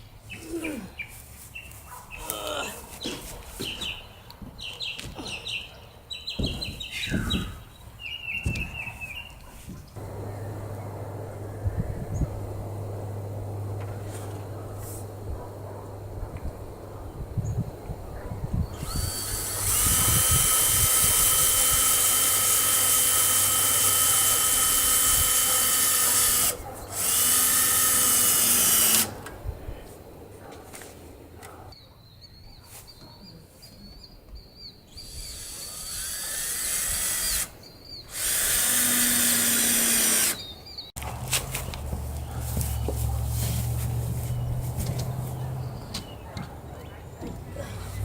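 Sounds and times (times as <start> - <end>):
power drill driving screws: 18.8 - 29.3, 35.0 - 37.5, 38.1 - 40.5.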